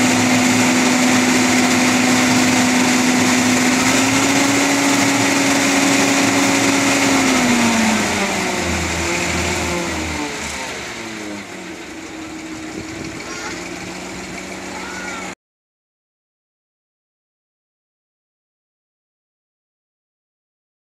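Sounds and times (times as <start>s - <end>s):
tractor engine running: 0.0s - 15.4s
vacuum blower high whine: 0.0s - 15.4s.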